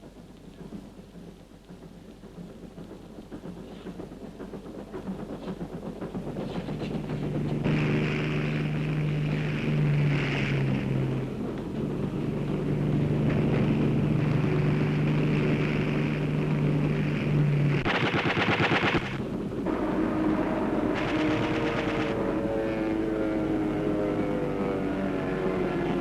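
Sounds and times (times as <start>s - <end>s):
aircraft engines droning: 0.0s - 26.0s
machine-gun fire: 7.6s - 11.1s, 17.8s - 19.3s, 21.0s - 22.2s.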